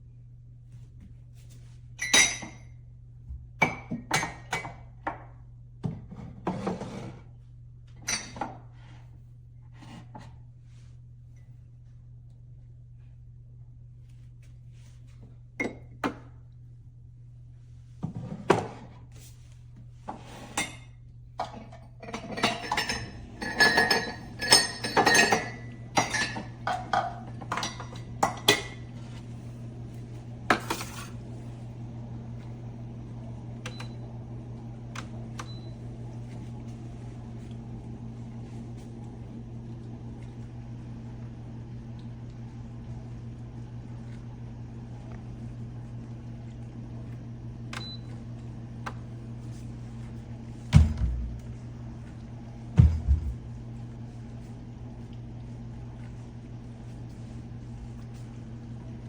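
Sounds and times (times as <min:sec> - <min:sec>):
dishes and utensils clattering: 0:20.5 - 0:28.8
steady hum: 0:27.8 - 0:59.0.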